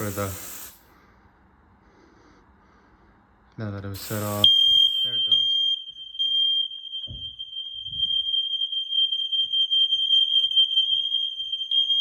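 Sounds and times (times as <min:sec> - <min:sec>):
smoke alarm high-pitched tone: 0:04.1 - 0:12.0.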